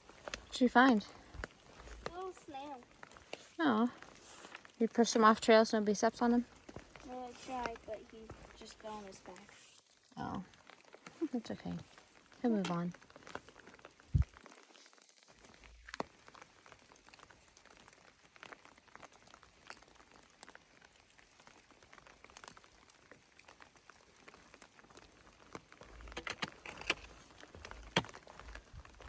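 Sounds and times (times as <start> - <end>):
rustling and clicks: 0.0 - 9.9, 23.5 - 29.0
drops ticking on leaves: 0.0 - 29.0
light rain pattering: 0.0 - 29.0.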